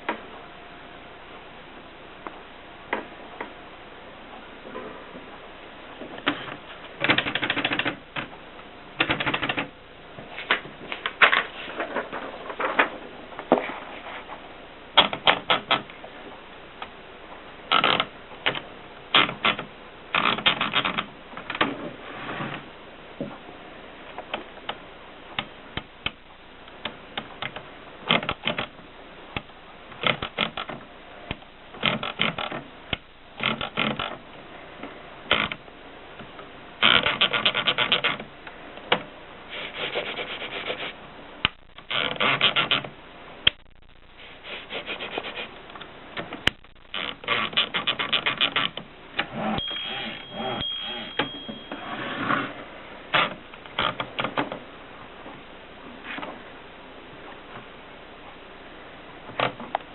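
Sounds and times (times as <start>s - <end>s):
manual typewriter keystrokes: 7.0s - 8.0s, 9.0s - 9.7s.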